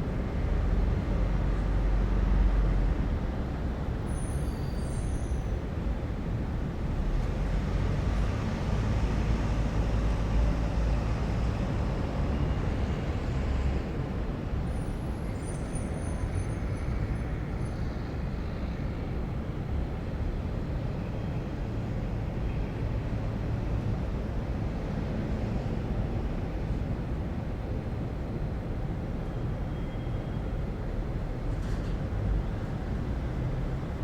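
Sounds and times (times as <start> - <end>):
faint high squeal: 4.1 - 5.6, 14.7 - 18.0, 29.6 - 30.5.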